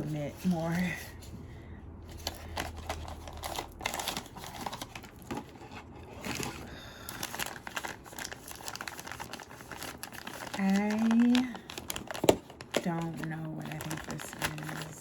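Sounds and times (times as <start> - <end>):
plastic bag crinkling: 2.1 - 15.0.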